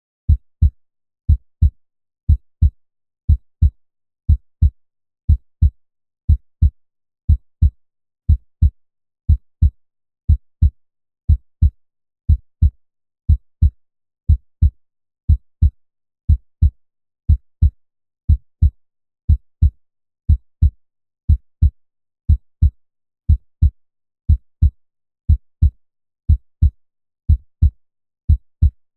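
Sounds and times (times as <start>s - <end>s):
heartbeat thumps: 27.3s - 27.8s.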